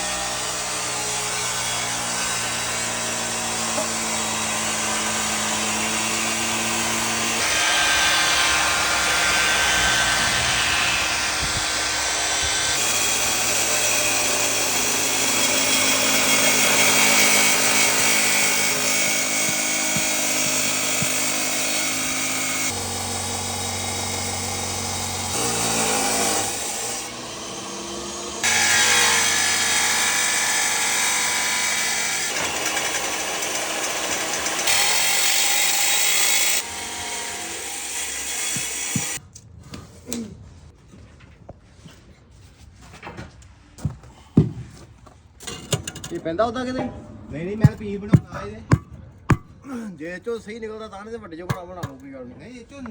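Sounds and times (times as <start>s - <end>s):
power tools on wood: 0.0s - 39.2s.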